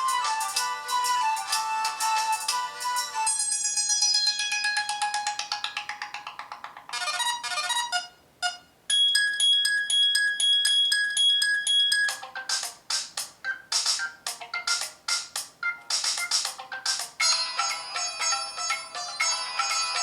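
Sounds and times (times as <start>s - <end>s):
phone ringtone melody: 0.0s - 5.7s, 6.9s - 12.7s, 13.4s - 20.0s.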